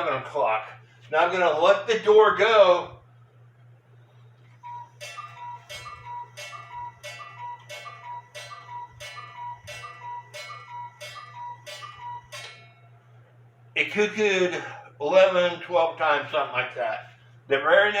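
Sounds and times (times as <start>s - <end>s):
clock bell strikes: 4.6s - 13.2s.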